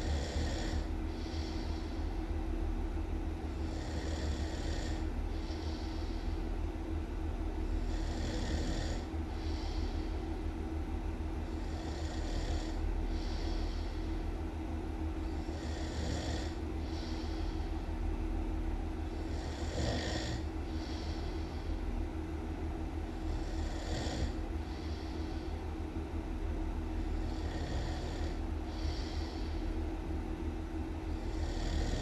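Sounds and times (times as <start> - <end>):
loud snoring: 0.0 - 0.9, 3.6 - 5.0, 7.8 - 9.7, 11.6 - 13.8, 15.4 - 17.2, 19.2 - 21.2, 23.2 - 25.0, 27.2 - 29.4, 31.1 - 32.0
steady low hum: 0.0 - 32.0.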